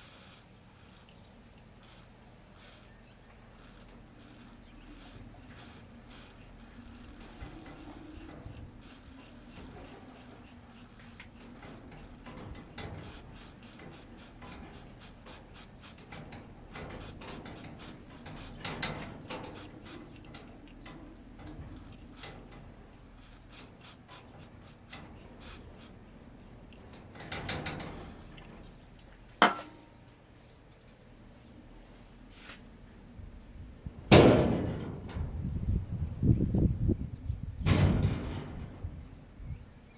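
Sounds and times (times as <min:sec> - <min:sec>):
tool scraping metal: 0:01.9 - 0:20.4, 0:26.9 - 0:28.8, 0:29.4 - 0:29.8
sharp knock on metal: 0:29.4 - 0:29.8.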